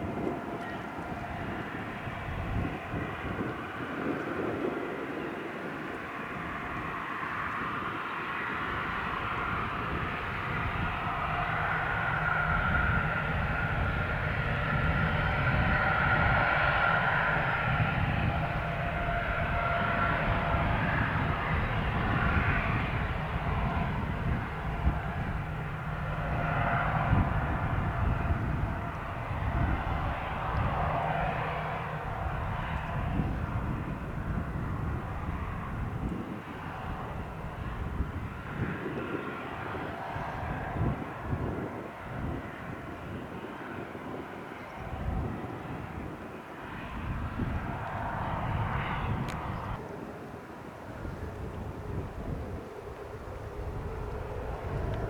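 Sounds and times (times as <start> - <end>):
jet engines whining: 0.0 - 55.0.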